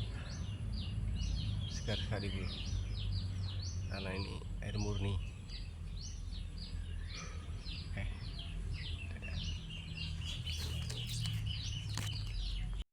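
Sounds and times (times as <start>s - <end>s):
small birds chirping: 0.0s - 12.8s.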